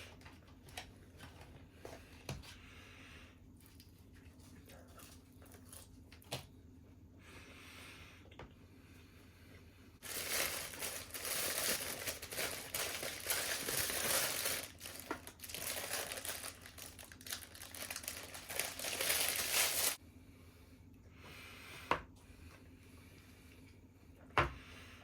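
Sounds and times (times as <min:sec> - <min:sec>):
food packaging crumpling: 0:10.0 - 0:20.0.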